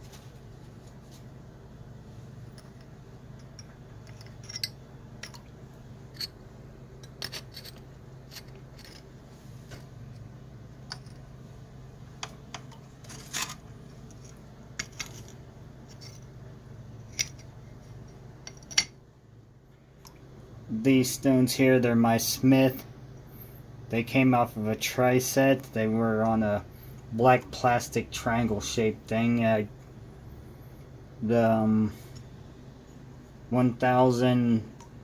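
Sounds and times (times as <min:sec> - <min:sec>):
faint low hum: 0:00.0 - 0:35.0
hard objects clicking and clacking: 0:02.5 - 0:05.5.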